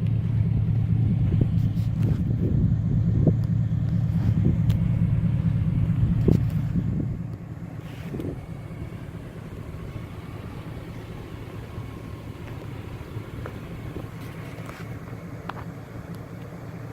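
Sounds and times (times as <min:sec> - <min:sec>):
vehicle engine rumbling: 0:00.0 - 0:16.9.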